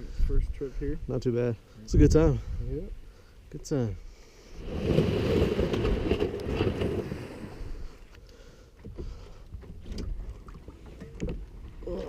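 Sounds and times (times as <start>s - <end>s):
wind buffeting microphone: 1.9s - 3.0s.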